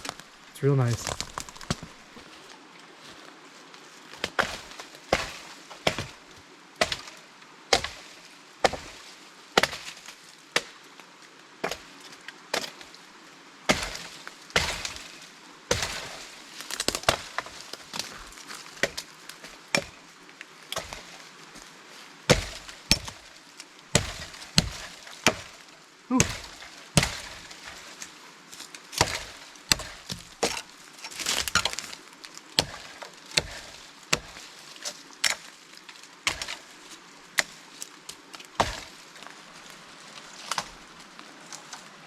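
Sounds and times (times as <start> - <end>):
blade chopping wooden pole: 6.8 - 8.0, 8.6 - 8.9, 13.7 - 15.0, 19.7 - 19.9, 22.3 - 23.2, 23.9 - 27.8, 29.0 - 31.9, 32.6 - 34.4, 36.3 - 36.6, 38.6 - 38.9.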